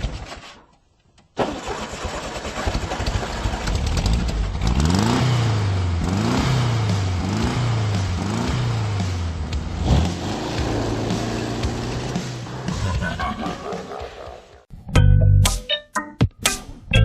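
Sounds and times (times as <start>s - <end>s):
car engine starting and revving: 1.4s - 13.2s.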